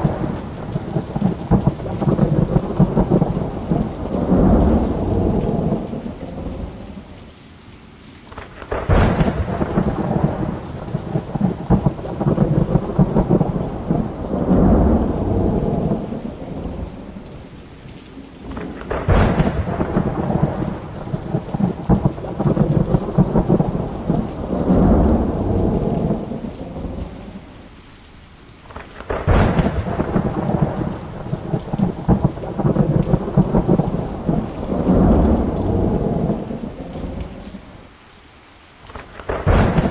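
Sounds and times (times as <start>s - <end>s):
thunder cracks and rumble: 0.0s - 6.8s, 8.4s - 17.0s, 18.4s - 27.2s, 28.7s - 37.6s, 38.9s - 39.9s
steady rain: 0.0s - 39.9s.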